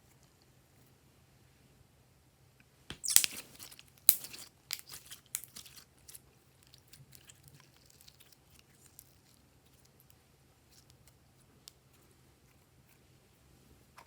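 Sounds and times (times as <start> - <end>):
slime squished by hand: 2.9 - 9.8.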